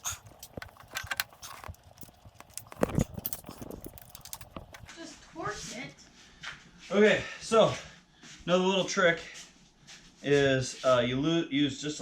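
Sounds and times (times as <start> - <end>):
clicks and clatter of tools: 0.0 - 4.9.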